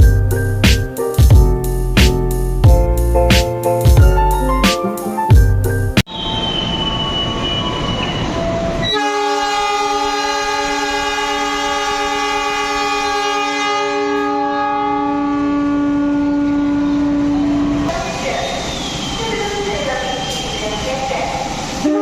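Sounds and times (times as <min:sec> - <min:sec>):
locomotive air horn blast: 0:08.8 - 0:17.3, 0:21.8 - 0:22.0
train running noise: 0:16.2 - 0:22.0.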